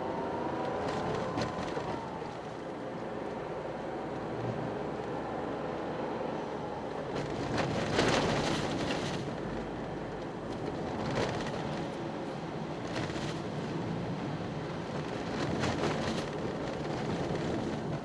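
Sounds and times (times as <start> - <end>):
tyre and road noise: 0.0 - 3.5.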